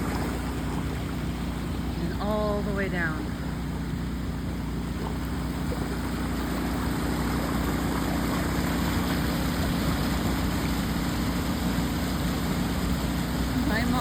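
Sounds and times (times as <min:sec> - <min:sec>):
floodwater rushing: 0:00.0 - 0:14.0.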